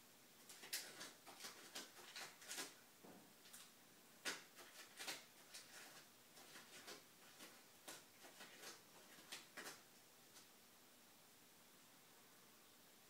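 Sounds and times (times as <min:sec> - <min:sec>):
cat clicking and scraping: 0:00.4 - 0:02.8, 0:03.4 - 0:10.5.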